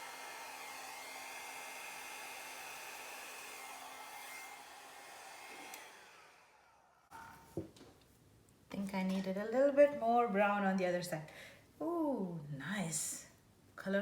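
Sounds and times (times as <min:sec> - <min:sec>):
hair dryer blowing with whine: 0:00.0 - 0:07.1
hair dryer switch click: 0:05.7 - 0:06.0.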